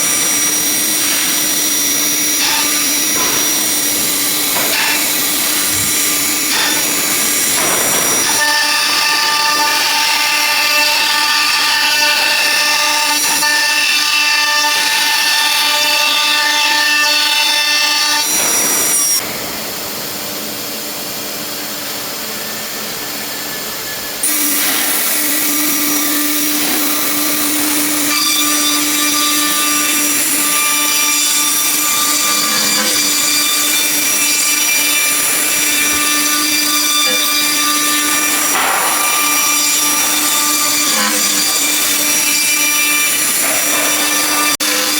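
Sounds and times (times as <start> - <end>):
cutting noise: 0.0 - 19.2, 24.2 - 44.9
cnc router spindle whining: 0.0 - 44.9.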